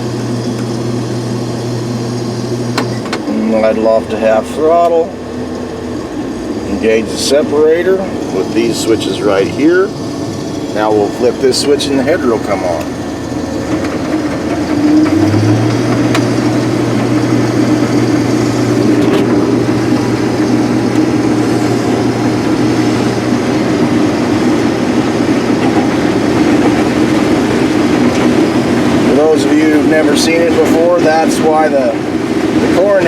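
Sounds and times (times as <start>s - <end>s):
combine harvester running: 0.0s - 33.0s.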